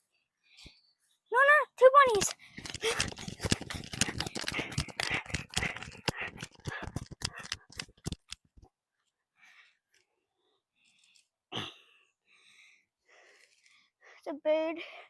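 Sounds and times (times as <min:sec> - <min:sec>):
crackly rustling and clicks: 0:02.0 - 0:09.2.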